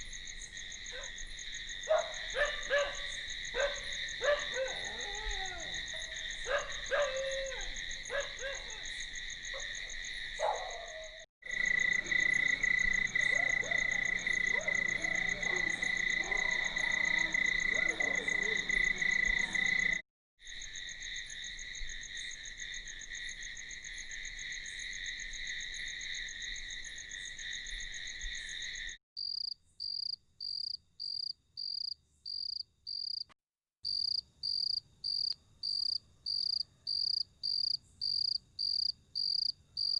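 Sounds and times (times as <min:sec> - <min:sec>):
crickets trilling: 0:00.0 - 0:29.0
single cricket chirping: 0:00.0 - 0:33.2, 0:33.9 - 0:39.9
frogs calling: 0:00.5 - 0:20.0.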